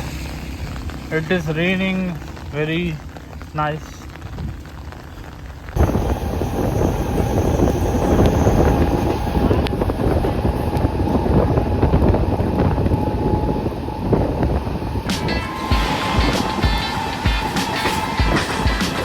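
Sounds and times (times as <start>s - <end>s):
vehicle rumble: 0.0s - 19.0s
wind buffeting microphone: 4.2s - 19.0s.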